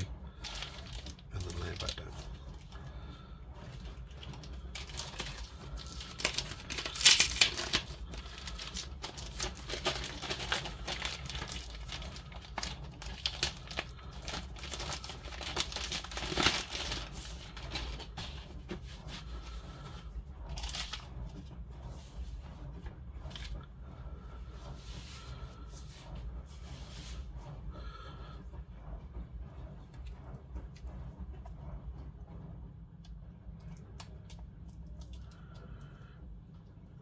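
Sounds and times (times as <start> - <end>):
plastic wrapping crinkling: 0.0 - 2.8, 3.7 - 19.6.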